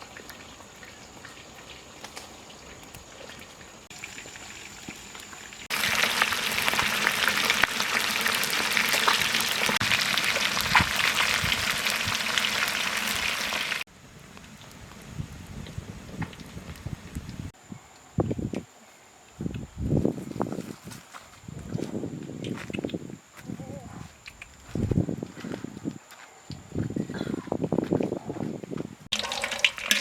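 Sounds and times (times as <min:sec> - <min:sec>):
fish sizzling in hot oil: 0:00.0 - 0:13.8, 0:29.1 - 0:30.0.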